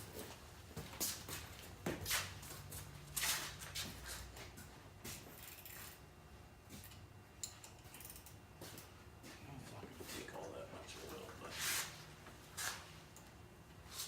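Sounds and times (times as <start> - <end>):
brushing rustles: 11.0 - 13.0.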